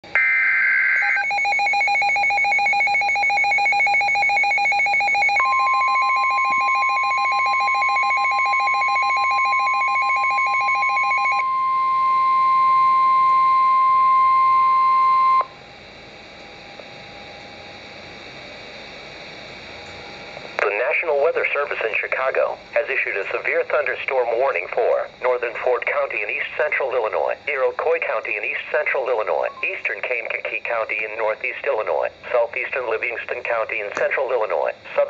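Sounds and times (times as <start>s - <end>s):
steady warning tone: 0.1s - 35.0s
pulsing electronic alarm beep: 0.2s - 15.6s
faint radio hiss: 20.5s - 35.0s.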